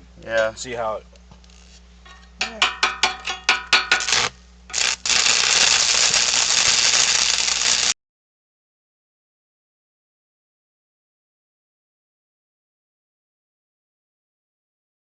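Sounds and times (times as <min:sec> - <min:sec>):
welding arc hiss: 0:03.6 - 0:08.0.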